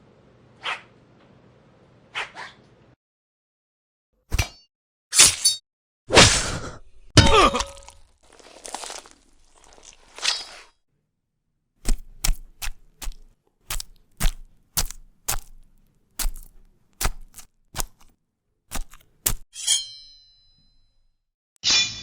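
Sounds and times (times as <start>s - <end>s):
sharp dry hits: 11.8s - 19.9s
metallic clang with ringing: 19.6s - 21.0s.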